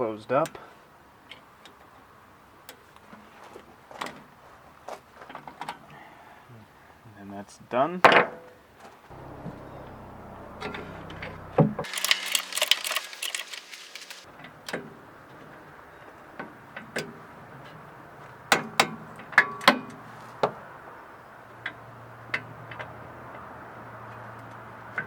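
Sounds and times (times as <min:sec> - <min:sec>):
metal parts rattling: 0:11.9 - 0:14.3
metal tools clinking: 0:11.9 - 0:14.3.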